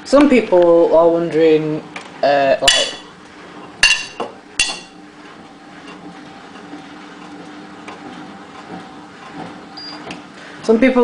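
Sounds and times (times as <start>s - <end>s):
low steady hum: 0.1s - 7.0s.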